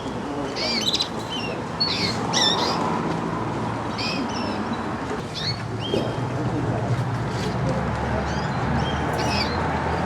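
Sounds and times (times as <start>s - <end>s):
canaries chirping: 8.3s - 9.6s.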